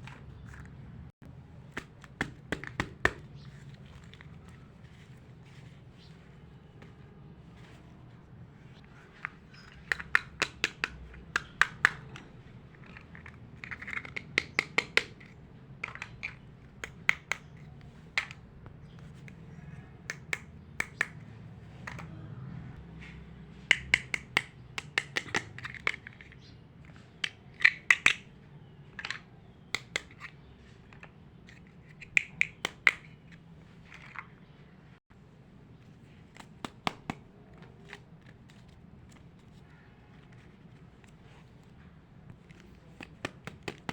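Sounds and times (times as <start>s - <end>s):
plastic toy pieces clicking: 9.2s - 18.4s, 23.7s - 28.3s, 28.9s - 34.3s.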